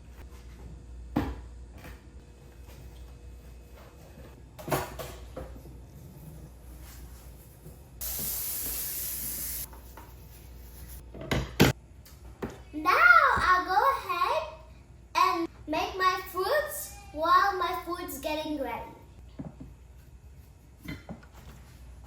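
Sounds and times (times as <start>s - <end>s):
spray hissing: 8.0s - 9.7s.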